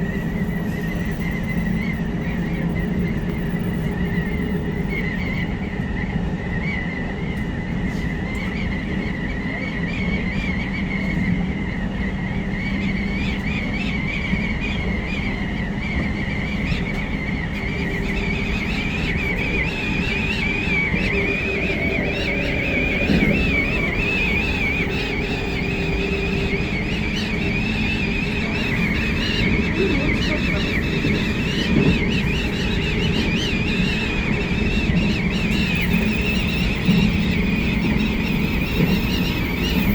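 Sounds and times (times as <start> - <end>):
train wheels rumbling on track: 0.0 - 39.9
wavering high whistle: 12.3 - 39.9
steady hum: 16.7 - 36.6.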